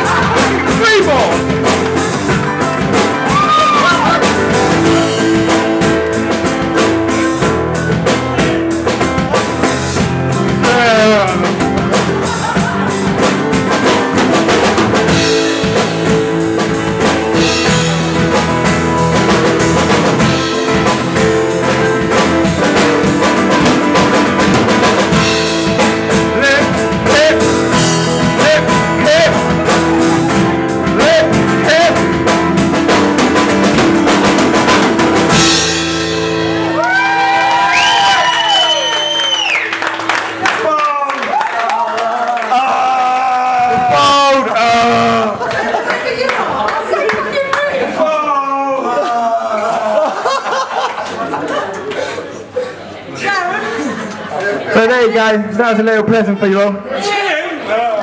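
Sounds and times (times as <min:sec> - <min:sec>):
drum kit: 0:00.0 - 0:41.7, 0:42.4 - 0:45.7
rock song: 0:00.0 - 0:41.7
guitar: 0:00.0 - 0:47.6
person singing: 0:25.4 - 0:32.3, 0:41.7 - 0:45.4.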